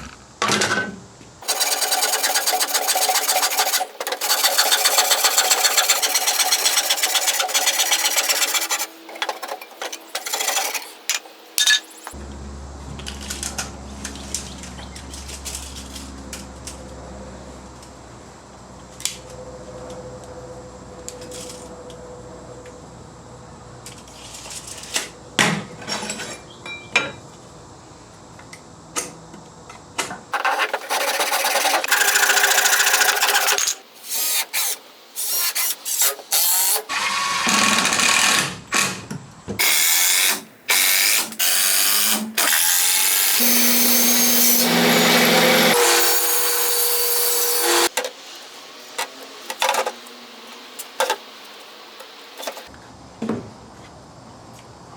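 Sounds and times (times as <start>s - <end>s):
power tool running in bursts: 39.6s - 47.9s.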